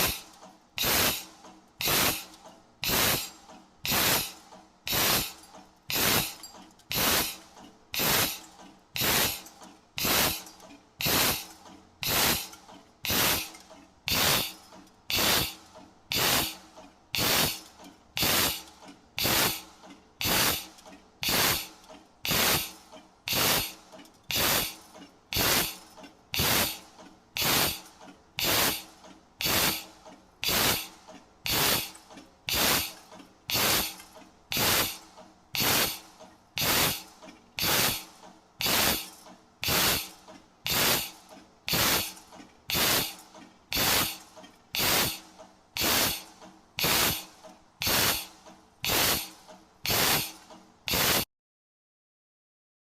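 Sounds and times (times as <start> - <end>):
hole-punching machine strokes: 0.0 - 51.3.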